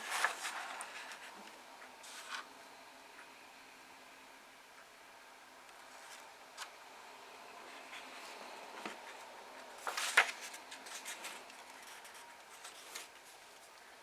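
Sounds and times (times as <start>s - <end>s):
crisp page flip: 0.0s - 1.3s, 2.1s - 2.5s, 9.8s - 13.3s
paper rustling: 0.0s - 1.4s, 2.0s - 2.5s, 9.8s - 13.7s.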